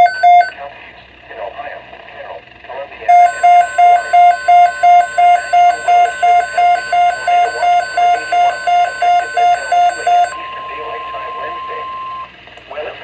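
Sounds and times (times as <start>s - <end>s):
rapid beeping alarm: 0.0s - 0.5s, 3.1s - 12.3s
steady high warning tone: 0.0s - 0.5s, 3.1s - 12.3s.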